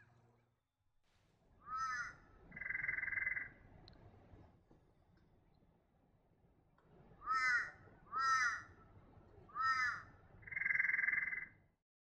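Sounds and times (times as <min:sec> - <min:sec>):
crow cawing: 0:01.6 - 0:03.5, 0:07.2 - 0:08.7, 0:09.6 - 0:11.5.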